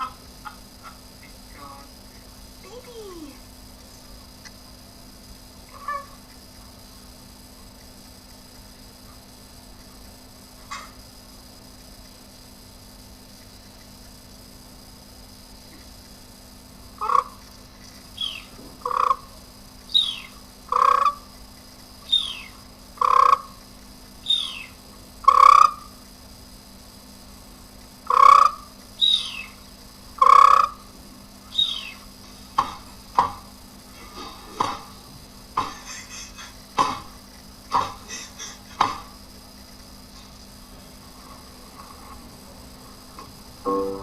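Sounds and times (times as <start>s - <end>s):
animal calling: 5.7s - 6.2s, 35.7s - 36.6s, 37.9s - 38.9s.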